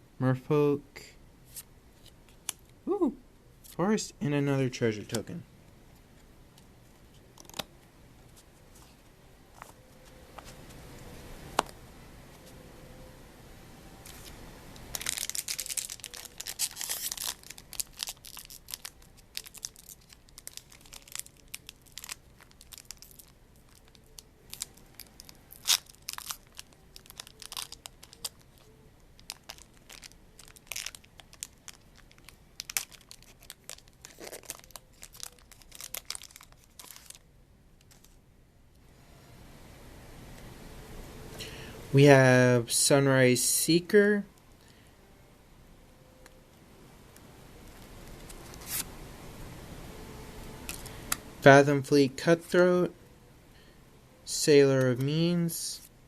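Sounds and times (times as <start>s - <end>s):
cards clicking: 7.3s - 7.7s
wrapper crinkling: 14.0s - 37.2s, 37.8s - 38.2s, 47.6s - 48.9s
foil wrapper tearing: 14.1s - 37.2s, 47.7s - 48.9s.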